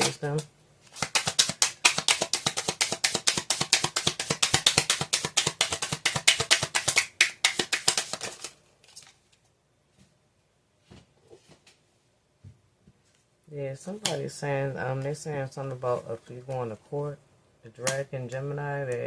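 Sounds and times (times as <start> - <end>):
cards being shuffled: 0.9 - 9.4.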